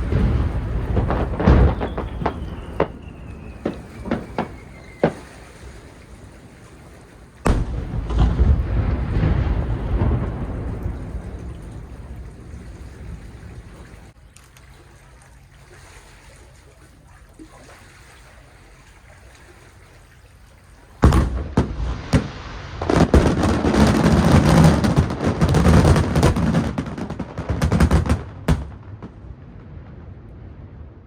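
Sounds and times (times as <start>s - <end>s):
fireworks crackling: 0.0s - 6.2s, 7.4s - 14.1s, 21.0s - 31.0s
fireworks exploding: 0.0s - 6.4s, 7.4s - 14.1s, 21.0s - 31.0s.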